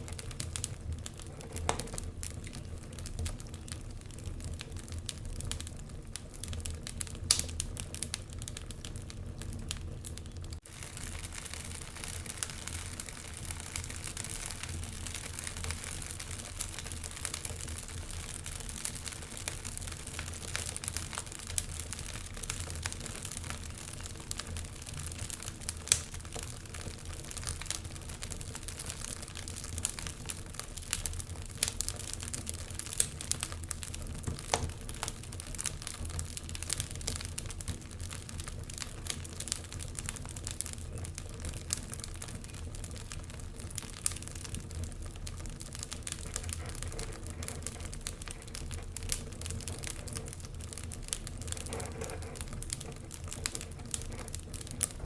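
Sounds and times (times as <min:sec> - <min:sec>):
loud fire pops: 0:00.0 - 0:55.0
wood fire crackling: 0:00.0 - 0:55.0.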